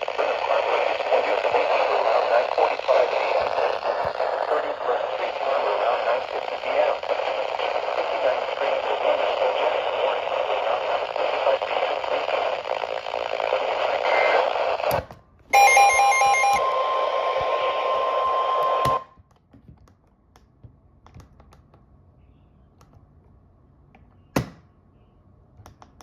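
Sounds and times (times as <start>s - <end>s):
radio static hiss: 0.0s - 15.0s, 15.6s - 19.0s
steady warning alarm tone: 15.6s - 19.1s.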